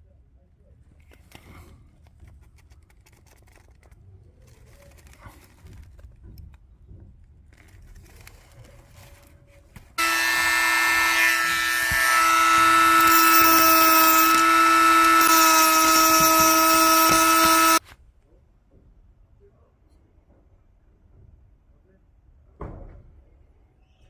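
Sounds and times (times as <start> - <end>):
faint handling sounds: 0.6 - 10.0
electric motor whining: 10.0 - 17.8.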